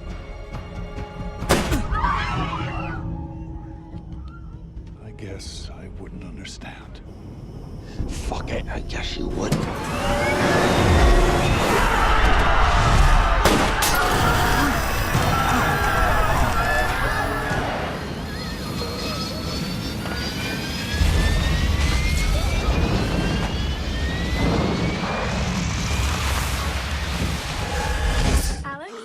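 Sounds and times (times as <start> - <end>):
dramatic trailer music: 0.0 - 28.6
jet engines whining: 8.5 - 28.2.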